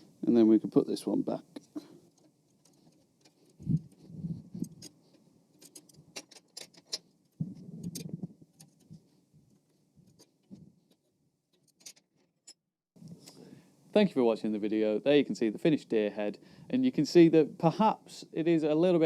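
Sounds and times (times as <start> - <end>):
metallic clicks and clinks: 4.6 - 7.1.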